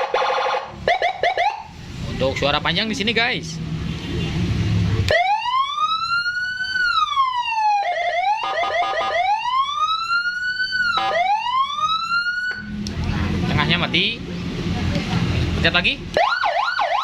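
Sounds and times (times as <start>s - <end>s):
electronic siren wailing: 0.0s - 1.7s, 5.1s - 12.8s, 16.2s - 17.0s.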